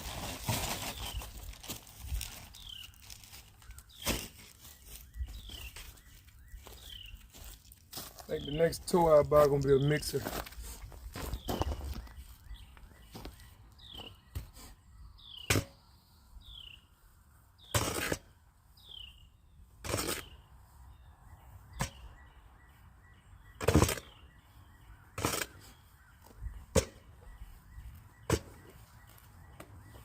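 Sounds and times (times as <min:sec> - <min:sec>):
hand tool scraping concrete: 0:17.7 - 0:18.2, 0:19.8 - 0:20.3
small bird chirping: 0:18.8 - 0:19.4, 0:21.7 - 0:30.0.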